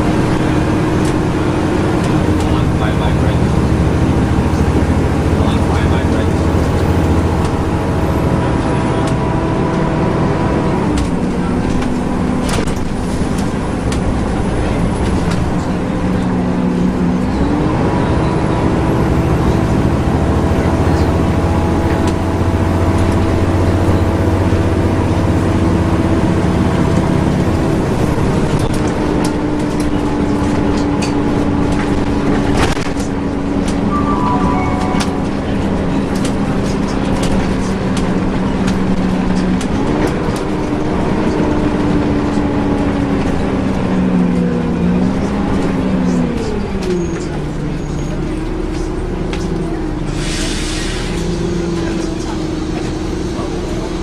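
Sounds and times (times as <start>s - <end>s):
bus engine and fan drone: 0.0s - 33.9s, 35.2s - 54.0s
road noise: 0.0s - 54.0s.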